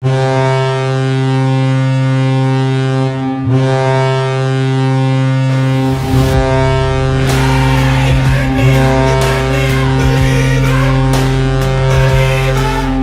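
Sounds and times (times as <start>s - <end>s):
hockey goal horn blaring: 0.0s - 13.0s
burst of noise: 5.2s - 12.8s.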